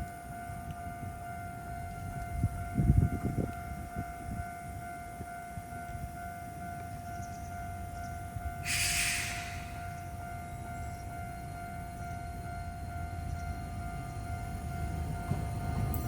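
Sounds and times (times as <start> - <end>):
level-crossing warning bell: 0.0 - 16.0
tram rumbling and wheel knocks: 5.8 - 16.0
burst of hiss: 8.6 - 9.8.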